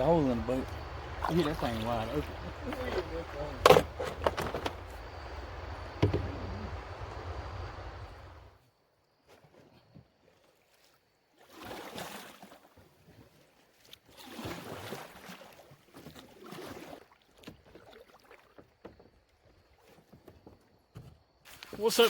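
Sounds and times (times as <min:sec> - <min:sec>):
small knocks: 0:00.0 - 0:08.2
water swishing and splashing: 0:00.0 - 0:08.6, 0:10.3 - 0:18.8.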